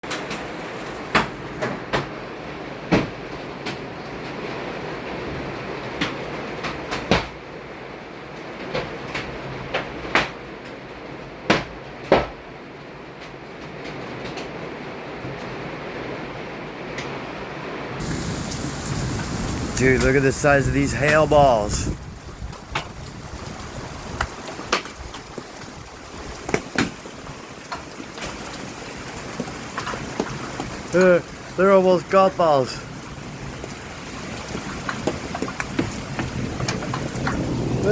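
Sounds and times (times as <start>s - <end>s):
hailstones knocking on hard surfaces: 18.0s - 37.9s
rushing hiss of hail storm: 18.0s - 37.9s.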